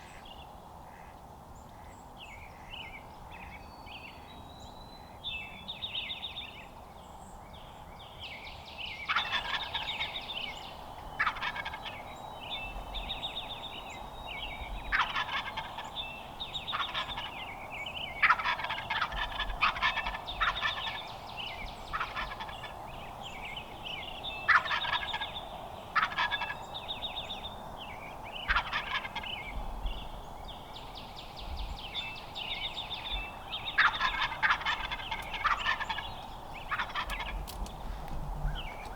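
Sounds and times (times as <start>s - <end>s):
turkey gobbling: 9.1s - 10.2s, 11.2s - 12.0s, 14.9s - 16.0s, 16.7s - 17.5s, 18.2s - 21.0s, 21.8s - 22.9s, 24.5s - 26.7s, 28.4s - 29.5s, 32.9s - 37.6s.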